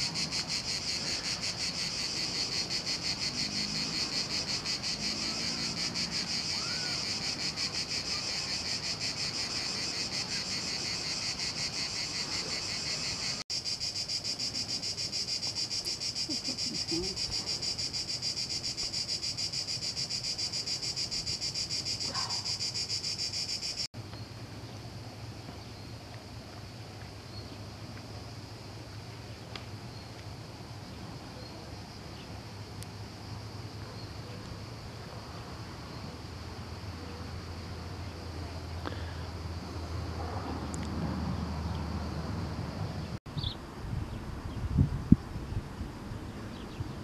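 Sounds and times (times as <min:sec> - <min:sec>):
insects shrilling: 0:00.0 - 0:23.9.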